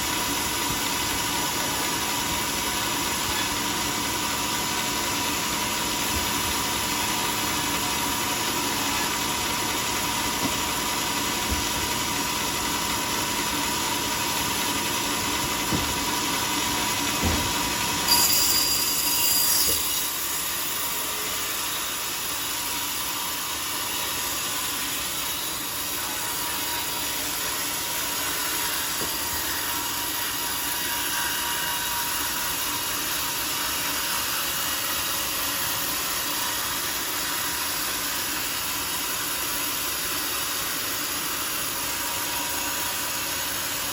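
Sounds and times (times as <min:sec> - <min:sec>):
sawmill saw running: 0:00.0 - 0:43.9
high-pitched screech: 0:18.1 - 0:20.2.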